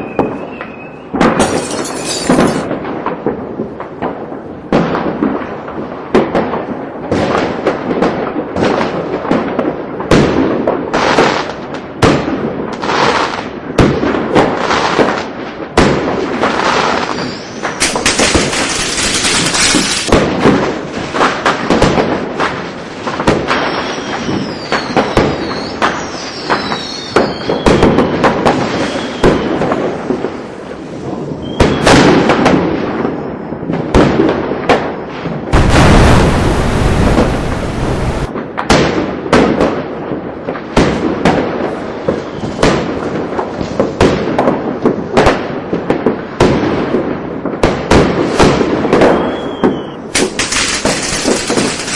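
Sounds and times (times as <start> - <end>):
fireworks bangs and crackling: 0.0 - 51.9
whistling fireworks: 0.0 - 51.9
loud rushing hiss: 35.6 - 38.3.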